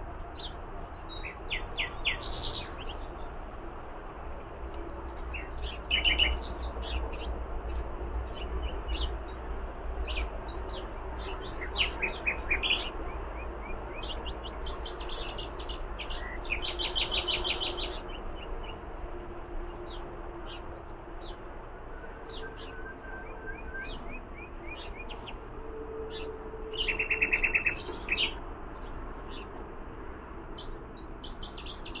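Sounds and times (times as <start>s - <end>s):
small birds chirping: 0.4s - 18.8s, 26.1s - 29.6s.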